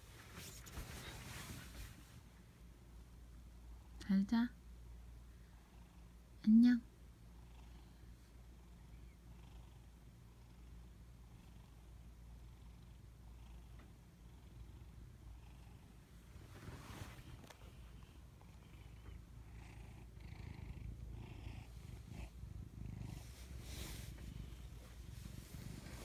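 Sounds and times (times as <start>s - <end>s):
cat purring: 7.2s - 26.0s.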